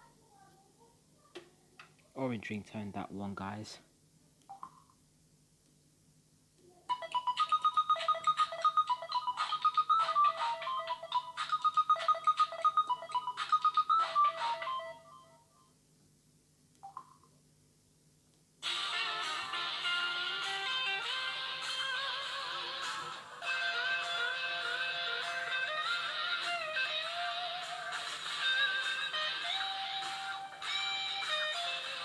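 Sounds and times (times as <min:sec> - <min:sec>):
phone ringtone melody: 0:06.9 - 0:15.5, 0:18.6 - 0:32.0.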